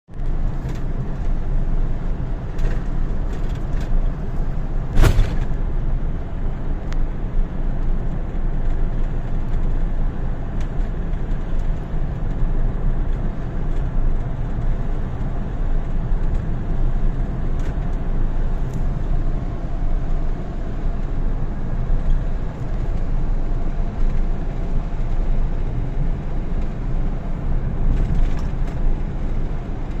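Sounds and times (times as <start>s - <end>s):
vehicle engine and tyre rumble: 0.1s - 30.0s
sharp knock: 5.0s - 5.6s.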